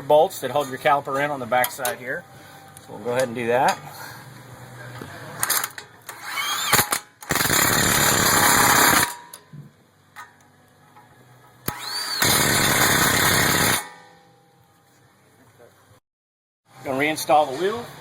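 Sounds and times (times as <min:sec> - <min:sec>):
power wrench whirring: 0:05.4 - 0:09.2, 0:11.7 - 0:13.9.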